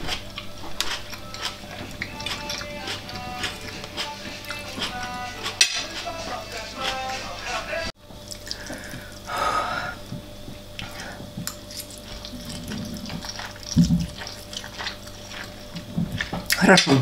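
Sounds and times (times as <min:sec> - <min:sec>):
cutlery clicks: 0:04.8 - 0:06.1
slurping noodles: 0:10.8 - 0:16.6.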